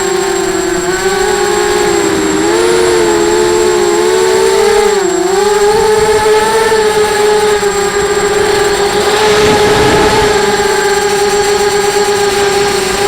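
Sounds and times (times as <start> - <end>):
quadcopter motors whining: 0.0 - 13.0.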